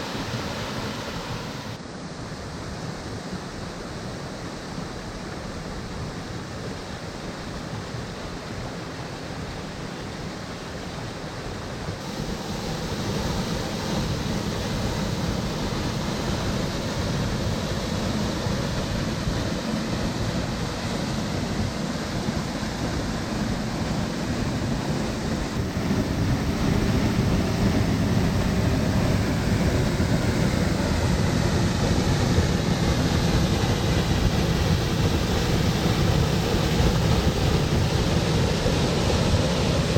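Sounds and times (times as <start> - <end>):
waterfall rushing: 0.0 - 1.8, 12.0 - 39.9.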